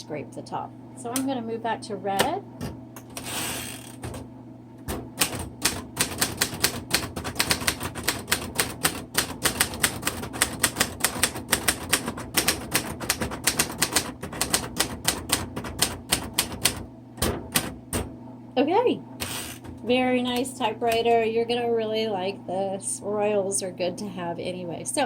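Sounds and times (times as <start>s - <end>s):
manual typewriter typing: 4.9s - 18.0s.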